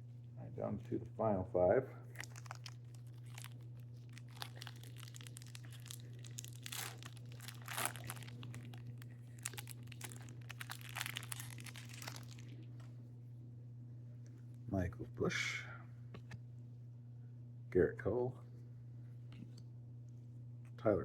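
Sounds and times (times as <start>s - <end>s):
plastic wrapper tearing and crinkling: 2.1s - 12.6s.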